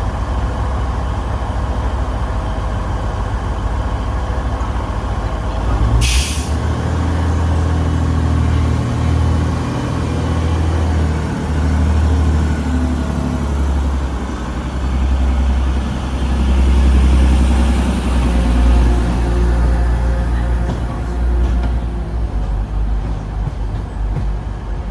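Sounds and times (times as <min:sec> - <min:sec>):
train rumbling: 0:00.0 - 0:24.9
air release hiss: 0:06.0 - 0:06.6.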